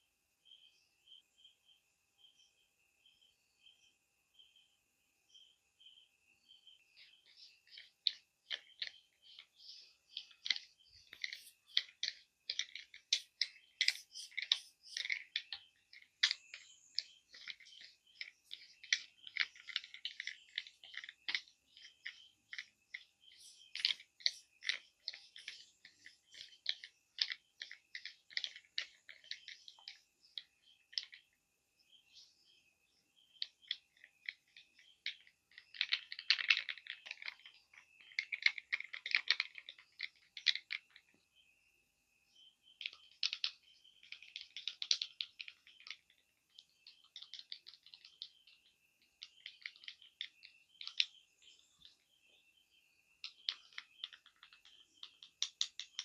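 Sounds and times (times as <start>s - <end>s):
scratching on hair and skin: 10.1s - 29.9s.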